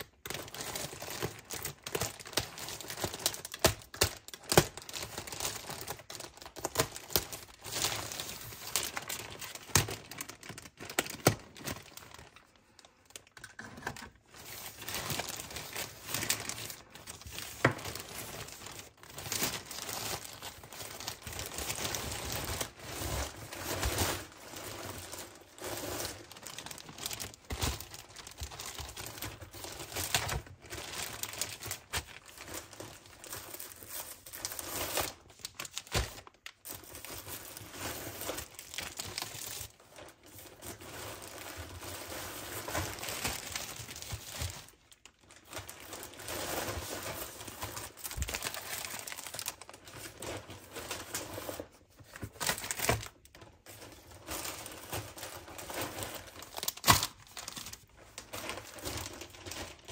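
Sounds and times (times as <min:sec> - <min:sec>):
plastic packaging crinkling: 0:00.0 - 0:59.9.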